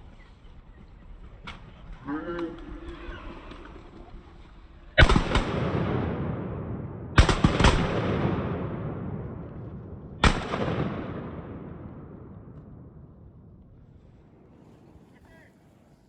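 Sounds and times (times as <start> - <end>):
shotgun shots echoing: 5.0 - 13.6.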